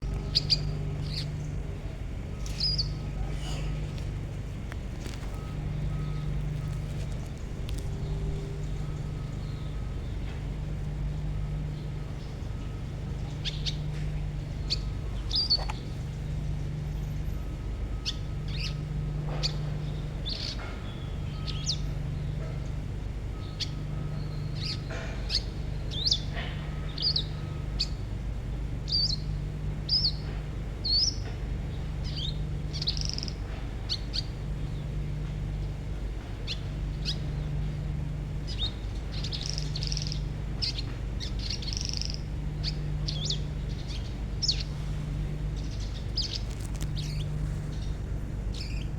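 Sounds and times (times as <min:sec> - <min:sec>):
songbird harsh chirps: 0:00.0 - 0:01.7, 0:02.3 - 0:04.0, 0:11.2 - 0:22.5, 0:28.8 - 0:35.0, 0:36.4 - 0:48.9
low hum: 0:00.0 - 0:48.9.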